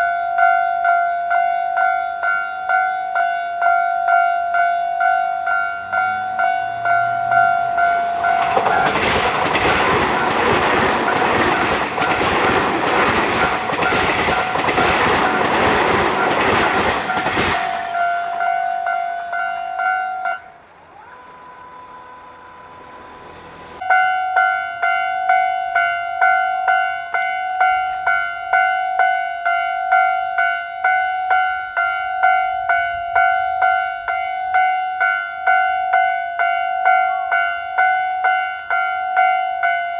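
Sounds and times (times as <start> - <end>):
level crossing alarm ringing: 0.0 - 39.9
train rumbling past: 3.8 - 36.0
wheel clatter over rail joints: 5.6 - 23.8.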